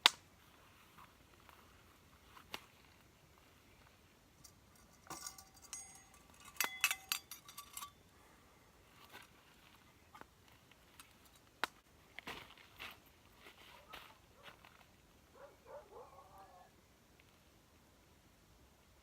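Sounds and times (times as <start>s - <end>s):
small metal objects jingling: 4.4s - 8.0s.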